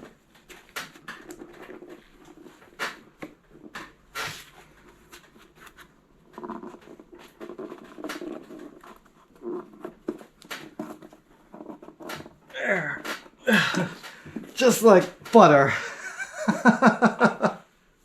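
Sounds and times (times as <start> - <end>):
sharp clicks and knocks: 0.0 - 15.6.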